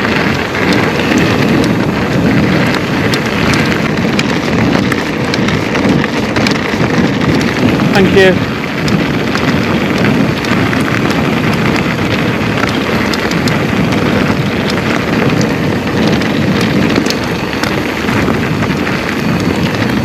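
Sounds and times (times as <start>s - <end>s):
bike tyre and trail rattle: 0.0s - 20.0s
wind buffeting microphone: 0.0s - 20.0s.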